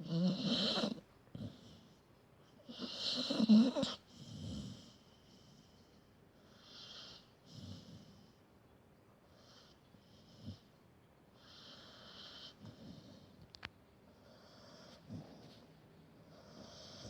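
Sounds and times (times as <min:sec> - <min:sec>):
dog snoring with whistling wheezes: 0:00.0 - 0:02.0, 0:02.6 - 0:05.7, 0:06.4 - 0:08.4, 0:11.4 - 0:13.4, 0:16.3 - 0:17.0
dog snorting: 0:00.0 - 0:02.0, 0:02.7 - 0:05.0, 0:16.3 - 0:17.0.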